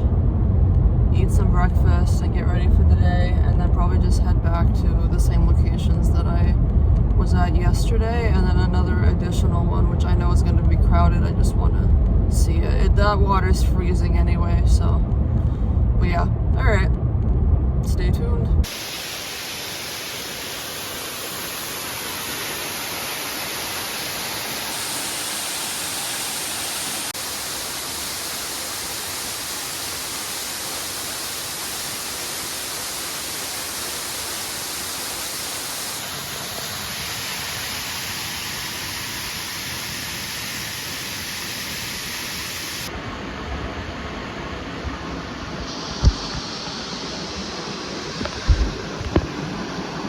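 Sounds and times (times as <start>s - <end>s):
waterfall rushing hiss: 18.6s - 43.2s, 44.0s - 50.0s.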